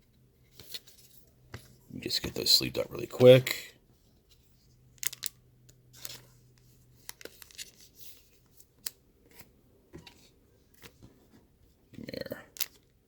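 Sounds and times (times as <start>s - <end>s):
cards rustling: 5.0s - 9.5s.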